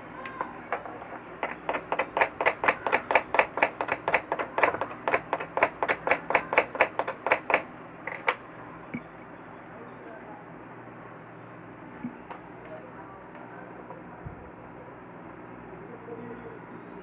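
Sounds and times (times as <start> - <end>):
fast sharp taps: 0.2 - 8.4.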